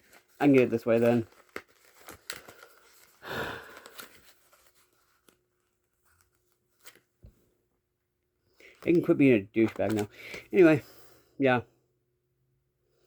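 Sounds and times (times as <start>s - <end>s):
packaging tearing: 0.0s - 5.4s.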